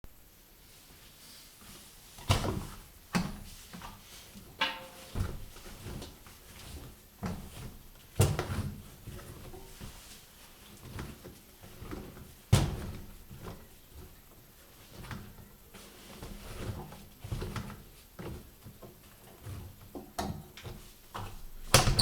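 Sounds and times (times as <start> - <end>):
washing machine clunks and knocks: 12.5 - 13.2, 21.6 - 22.0.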